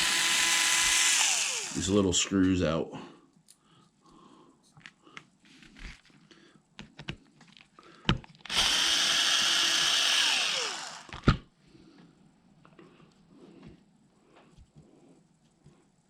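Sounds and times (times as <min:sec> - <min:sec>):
power drill spinning: 0:00.0 - 0:02.2, 0:08.5 - 0:11.4.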